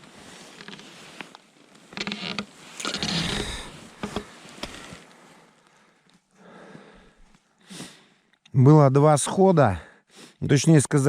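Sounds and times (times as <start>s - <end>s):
close rustling and handling: 0.0s - 6.4s.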